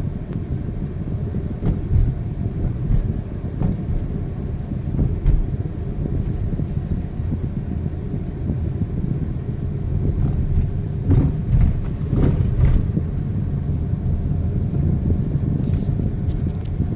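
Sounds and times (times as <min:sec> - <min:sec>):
car engine rumbling: 0:00.0 - 0:16.9.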